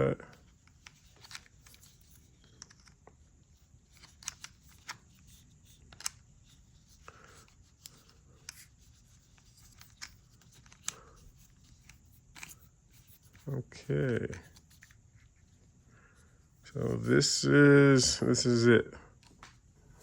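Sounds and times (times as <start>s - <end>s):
plastic parts clicking and tapping: 0.3s - 3.2s, 3.9s - 13.5s.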